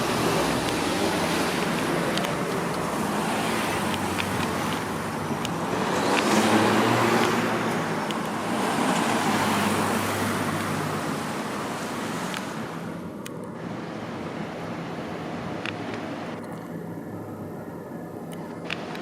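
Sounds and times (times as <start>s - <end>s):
loud vehicle passing: 0.0s - 12.9s
vehicles driving past: 0.0s - 17.6s.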